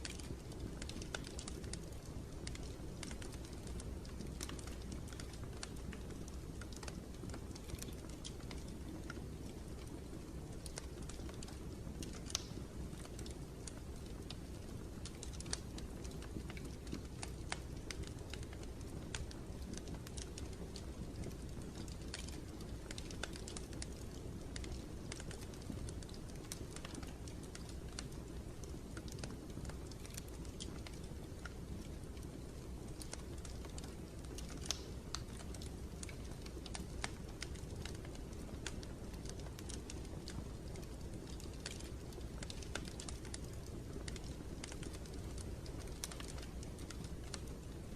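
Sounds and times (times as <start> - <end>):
light ticks and taps: 10.6 - 14.4, 15.0 - 47.7.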